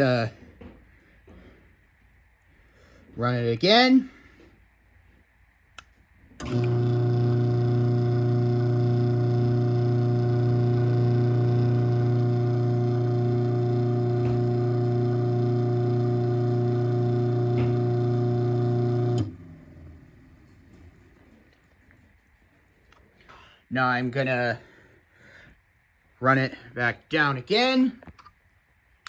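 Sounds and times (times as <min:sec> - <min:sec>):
garage door opener motor hum: 0:06.4 - 0:21.3.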